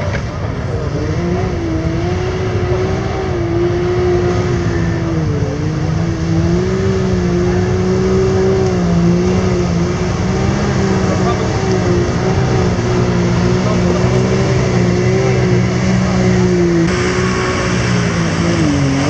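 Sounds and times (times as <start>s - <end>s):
engine running at high revs: 0.0s - 19.0s.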